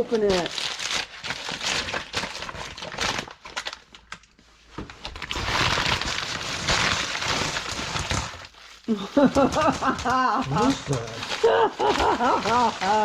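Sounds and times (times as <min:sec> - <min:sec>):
bag rustling: 0:05.0 - 0:13.0.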